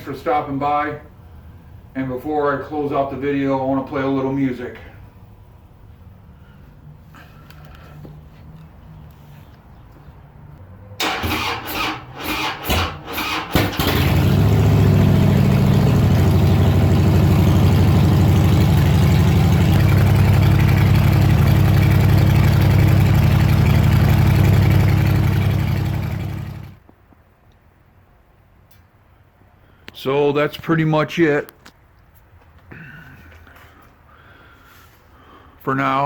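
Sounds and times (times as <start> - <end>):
engine cranking and running: 11.0 - 26.8.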